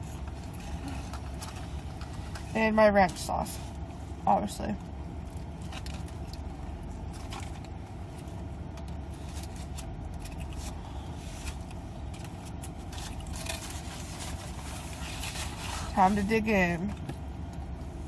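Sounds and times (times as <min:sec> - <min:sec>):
car cabin engine rumble: 0:00.0 - 0:18.0
food packaging rustling: 0:05.4 - 0:16.0.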